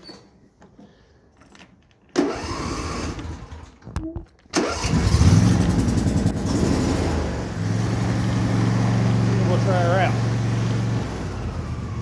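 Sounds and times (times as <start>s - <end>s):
lawn tractor engine running: 2.2s - 3.7s, 4.5s - 12.0s
starter motor cranking: 2.2s - 3.7s, 4.5s - 7.1s.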